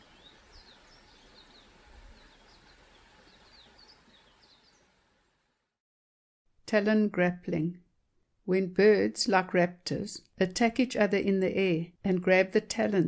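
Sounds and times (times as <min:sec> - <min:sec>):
small birds chirping: 0:00.0 - 0:05.0
low outdoor background noise: 0:00.0 - 0:05.8.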